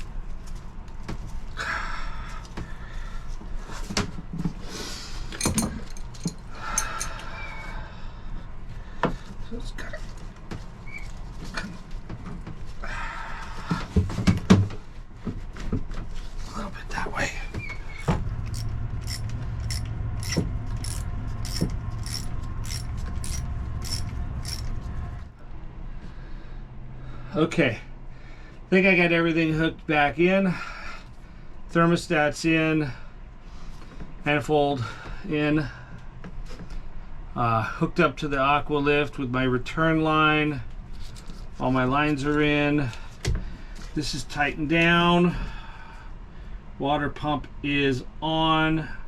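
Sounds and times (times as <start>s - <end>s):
steady low hum: 0.0s - 49.0s
metal tools clinking and rattling: 5.4s - 7.2s, 18.0s - 24.8s
low hum: 16.8s - 27.2s.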